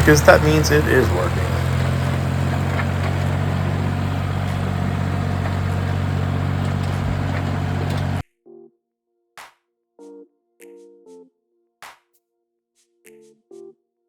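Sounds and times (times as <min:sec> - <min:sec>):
tractor engine running: 0:00.0 - 0:08.2.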